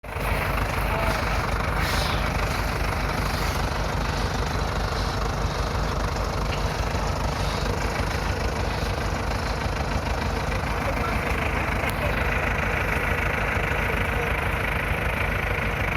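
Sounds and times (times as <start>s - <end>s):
tractor diesel engine running: 0.0s - 15.9s.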